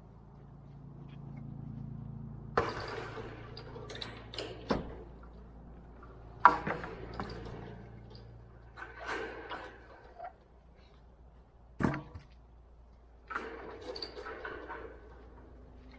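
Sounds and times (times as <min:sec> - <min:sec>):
wire fencing clanking: 0:02.5 - 0:10.5, 0:13.2 - 0:15.9
wire fencing rattling: 0:02.6 - 0:10.3.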